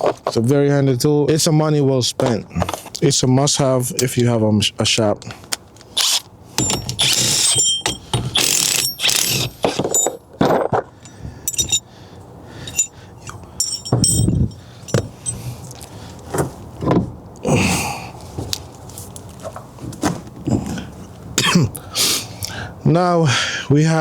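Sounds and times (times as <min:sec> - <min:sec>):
metal tools clinking and scraping: 0:03.8 - 0:04.4, 0:05.4 - 0:16.5.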